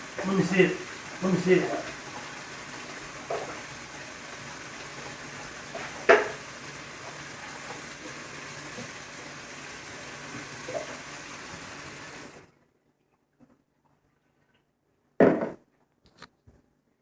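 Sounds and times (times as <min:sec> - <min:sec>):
steady hiss: 0:00.0 - 0:12.5.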